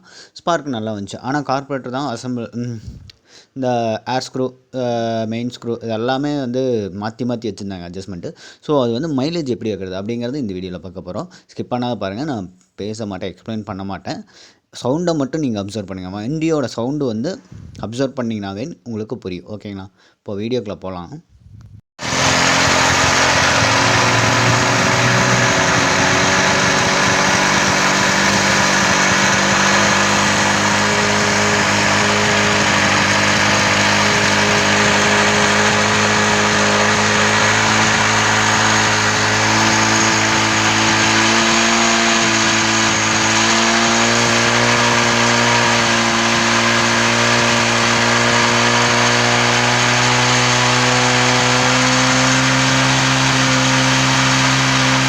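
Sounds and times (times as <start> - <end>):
motorcycle engine running: 22.0 - 55.0.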